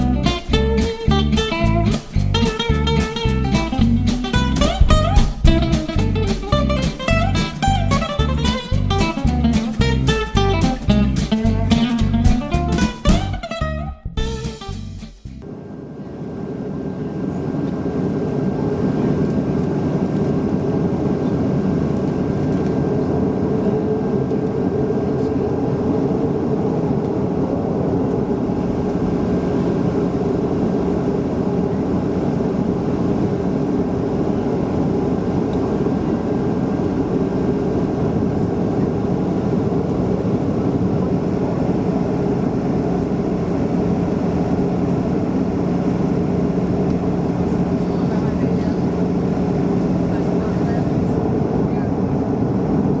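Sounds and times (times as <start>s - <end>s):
steady hums: 0.0s - 15.9s.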